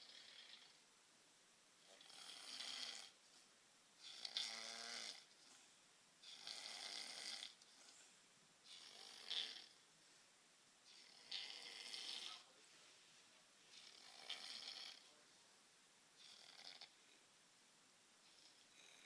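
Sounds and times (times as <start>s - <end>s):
faint snoring: 0.0s - 0.8s, 1.8s - 3.2s, 4.0s - 8.1s, 8.7s - 9.8s, 10.9s - 12.6s, 13.7s - 15.2s, 16.2s - 17.2s, 18.2s - 19.0s.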